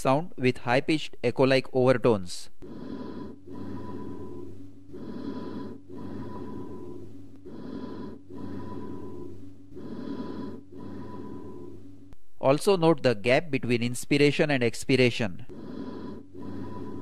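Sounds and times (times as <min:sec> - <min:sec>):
hollow breath sounds: 0:02.6 - 0:12.2, 0:15.4 - 0:17.0.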